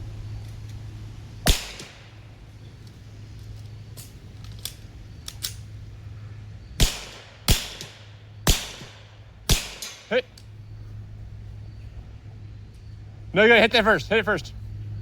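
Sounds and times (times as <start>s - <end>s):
suppressed gunshots: 1.4s - 2.3s, 6.8s - 10.1s.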